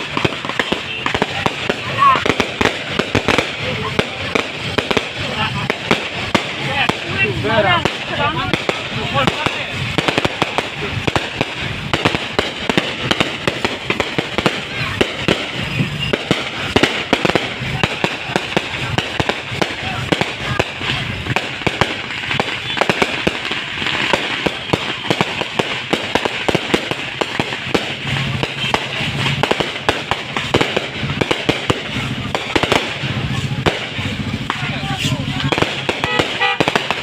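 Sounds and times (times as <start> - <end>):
fireworks and firecrackers popping: 0.0 - 37.0.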